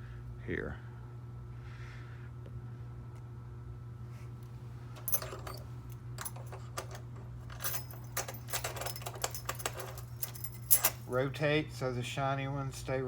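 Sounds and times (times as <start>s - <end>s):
metal keys clinking and jangling: 5.0s - 11.3s.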